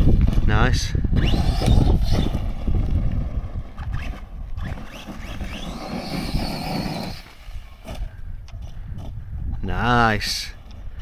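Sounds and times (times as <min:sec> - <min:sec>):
electric motor whining: 0:00.0 - 0:08.7
tyres rumbling on dirt: 0:00.0 - 0:11.0.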